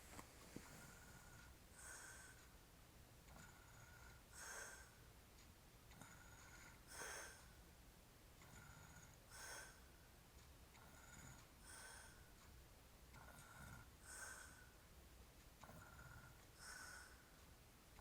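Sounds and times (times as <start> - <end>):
man breathing in sleep: 0.6 - 2.5, 3.4 - 5.0, 6.0 - 7.6, 8.5 - 9.9, 10.8 - 12.4, 13.2 - 14.8, 15.6 - 17.4.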